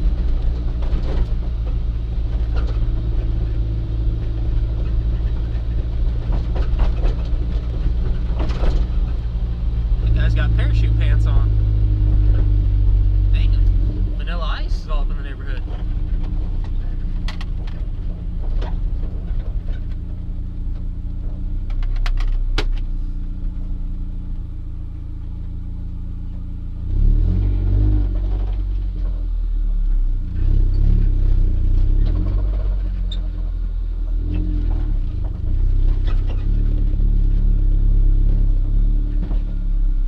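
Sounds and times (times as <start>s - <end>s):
car engine accelerating: 0.0s - 40.0s
road drone: 0.0s - 40.0s.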